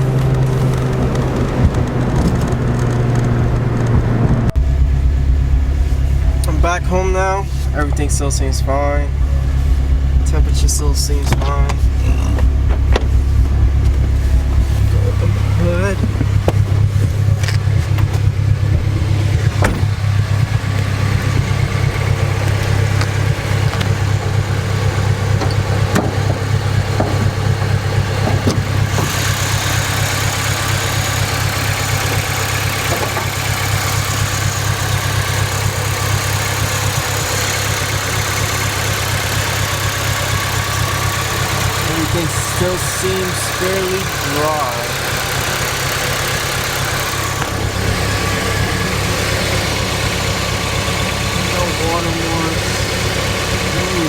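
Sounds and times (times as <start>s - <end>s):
car engine idling: 0.0s - 54.0s.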